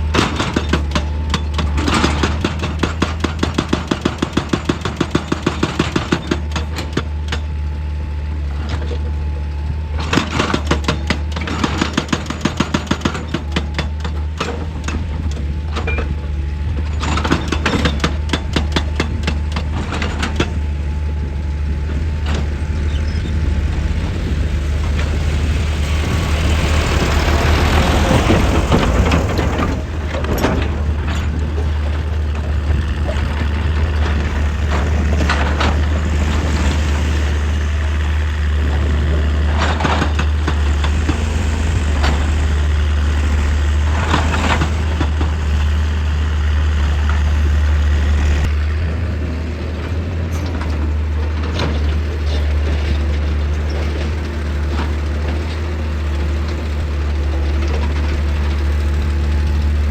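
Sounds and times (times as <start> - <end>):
diesel engine running: 0.0 - 59.9
bucket scraping rock and earth: 21.8 - 38.0.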